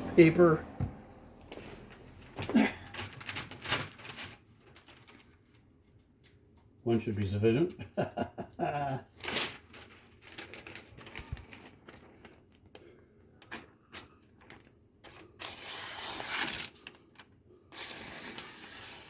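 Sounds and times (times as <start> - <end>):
paper rustling: 1.4 - 6.3, 9.1 - 19.0
knife cutting paper: 15.0 - 17.0, 17.7 - 19.0.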